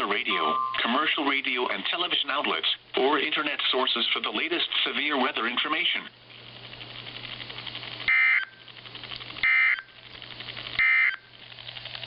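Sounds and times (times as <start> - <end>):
ticking hiss: 6.3 - 12.0
warbling data bursts: 7.8 - 8.8, 9.4 - 10.0.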